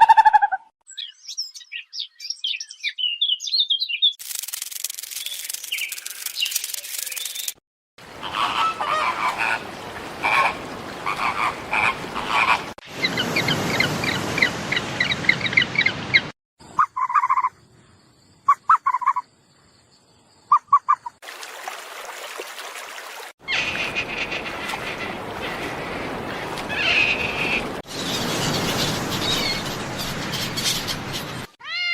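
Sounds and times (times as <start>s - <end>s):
animal chirps and calls: 16.8s - 17.6s, 18.5s - 19.3s.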